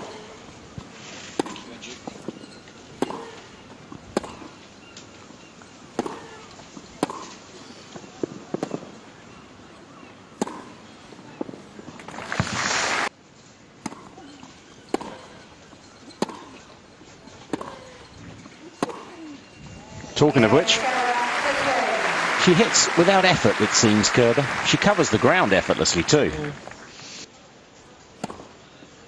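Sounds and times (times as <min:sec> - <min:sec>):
tennis racket striking ball: 0:01.3 - 0:01.7, 0:03.0 - 0:03.4, 0:04.1 - 0:04.5, 0:06.0 - 0:07.4, 0:10.4 - 0:10.8, 0:14.8 - 0:15.3, 0:16.1 - 0:16.6, 0:17.4 - 0:18.0, 0:18.8 - 0:19.2
crowd noise burst: 0:12.1 - 0:13.1, 0:20.1 - 0:27.3.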